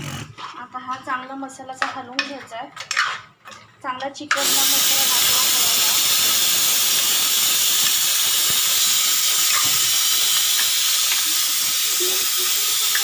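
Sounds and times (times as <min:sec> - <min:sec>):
steam hissing: 0:04.4 - 0:13.0.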